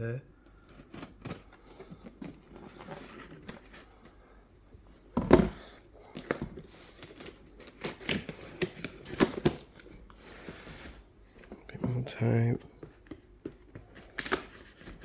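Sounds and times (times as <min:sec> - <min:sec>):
crinkling rustles: 0:00.5 - 0:15.0
box bumping: 0:05.1 - 0:06.6
packing tape peeling and tearing: 0:06.2 - 0:10.0, 0:13.9 - 0:15.0.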